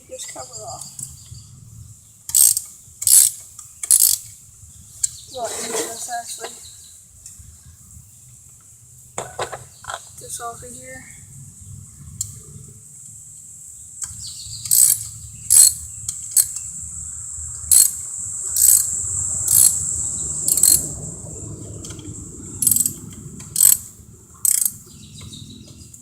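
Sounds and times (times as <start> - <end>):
socket ratchet clicking: 2.3 - 4.3, 14.0 - 16.6, 17.7 - 19.8, 20.4 - 20.9, 22.6 - 23.9, 24.5 - 24.8.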